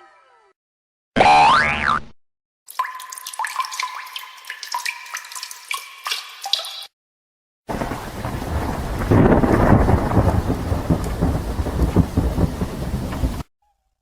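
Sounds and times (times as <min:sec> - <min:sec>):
rolling thunder: 0:07.7 - 0:13.4
rain: 0:07.7 - 0:13.5.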